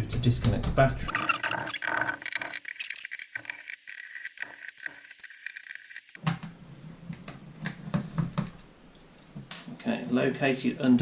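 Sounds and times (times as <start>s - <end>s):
laptop clicks and rattles: 1.1s - 6.2s.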